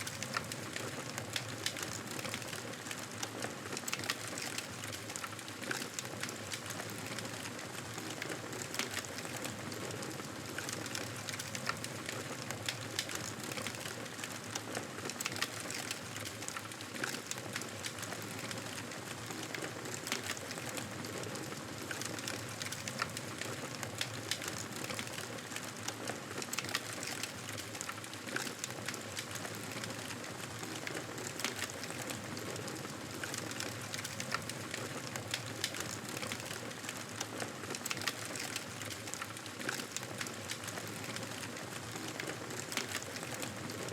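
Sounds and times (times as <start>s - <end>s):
wood crackling and popping: 0.0s - 43.9s.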